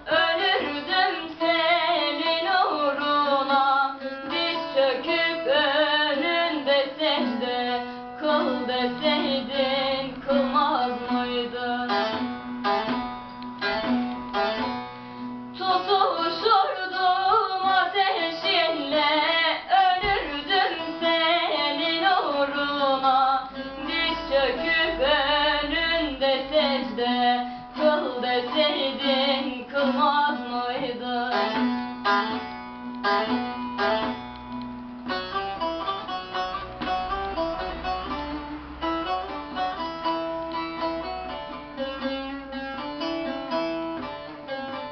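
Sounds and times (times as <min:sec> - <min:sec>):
person singing: 0:00.0 - 0:12.4, 0:15.6 - 0:31.7
plucked string melody: 0:00.0 - 0:44.9.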